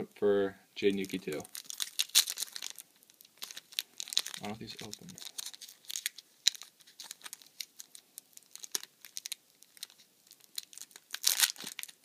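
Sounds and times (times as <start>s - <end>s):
foil wrapper crinkling and tearing: 0.9s - 12.0s.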